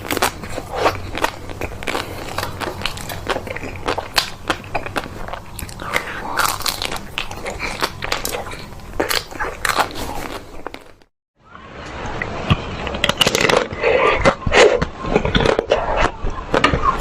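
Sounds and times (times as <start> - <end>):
wet mouth sounds: 0.0 - 11.0
crunching ice cream: 0.0 - 11.1, 12.8 - 17.0.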